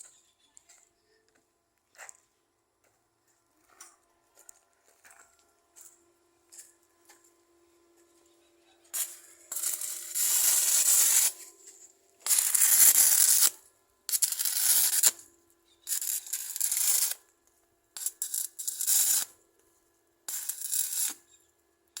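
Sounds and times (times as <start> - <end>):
arc welding crackling hiss: 9.0 - 11.5, 12.2 - 15.2, 15.9 - 17.2, 18.0 - 19.4, 20.3 - 21.2.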